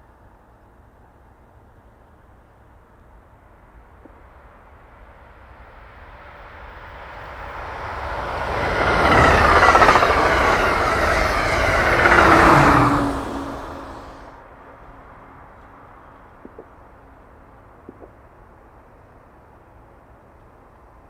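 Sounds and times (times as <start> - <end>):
train whine: 6.0 - 14.4
train wheels rumbling on rail: 6.4 - 14.3.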